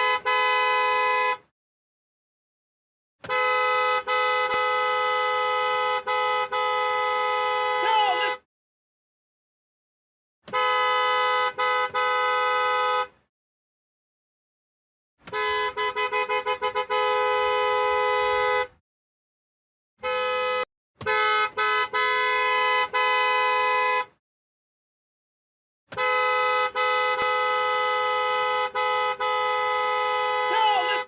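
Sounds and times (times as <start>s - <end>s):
car horn honking: 0.0s - 1.5s, 3.2s - 8.5s, 10.4s - 13.3s, 15.2s - 18.8s, 20.0s - 24.2s, 25.9s - 31.0s.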